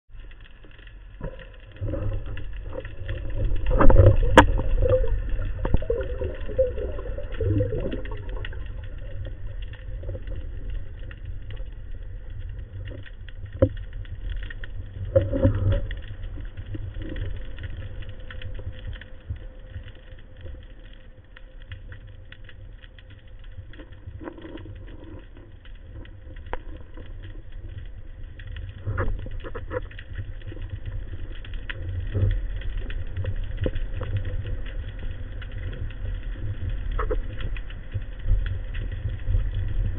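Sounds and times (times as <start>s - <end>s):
muffled underwater rumble: 0.1s - 39.9s
water movement: 0.1s - 39.9s.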